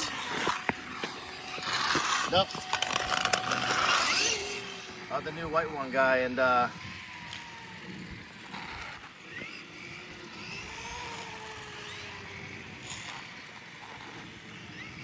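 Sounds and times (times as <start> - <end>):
electric motors whining: 0.0 - 15.0.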